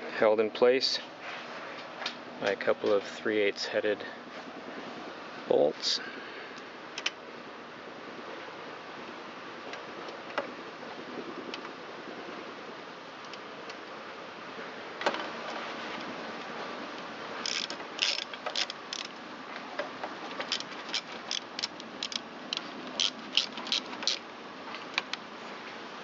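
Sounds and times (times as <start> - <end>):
socket ratchet clicking: 17.4 - 19.1, 20.4 - 24.2.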